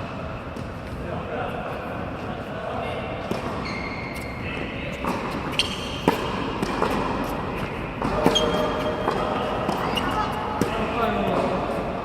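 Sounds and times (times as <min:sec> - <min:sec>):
tennis balls struck by rackets: 0:03.2 - 0:03.6, 0:04.6 - 0:12.0
tennis balls bouncing on court: 0:03.2 - 0:12.0
high squeaks: 0:03.6 - 0:04.5, 0:05.4 - 0:06.2, 0:08.2 - 0:08.9, 0:09.7 - 0:10.4.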